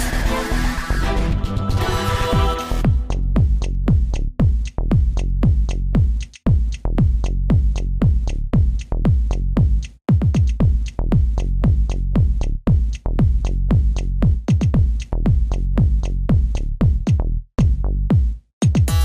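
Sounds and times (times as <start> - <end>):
electronic dance music: 0.0 - 3.6, 18.6 - 19.0.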